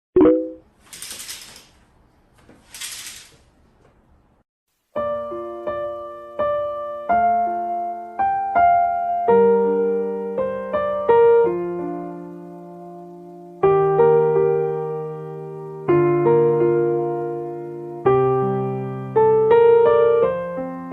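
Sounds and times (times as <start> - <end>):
slow piano music: 4.9 - 20.9.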